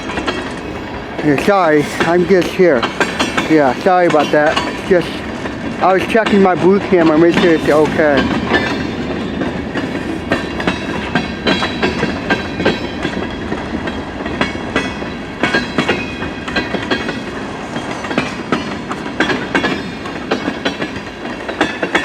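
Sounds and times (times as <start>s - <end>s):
train rumble: 0.0s - 22.0s
train wheels clicking over rail joints: 0.0s - 22.0s.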